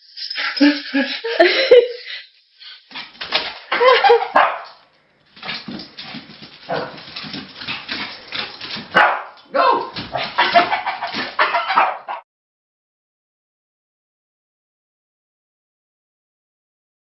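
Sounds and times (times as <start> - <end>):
dog barking: 3.8 - 4.8, 6.7 - 7.1, 8.9 - 12.2.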